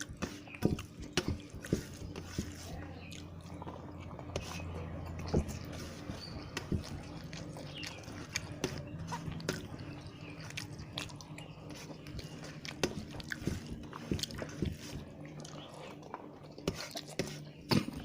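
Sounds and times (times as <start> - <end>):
chewing: 0.0 - 18.0
faint low hum: 0.0 - 18.0.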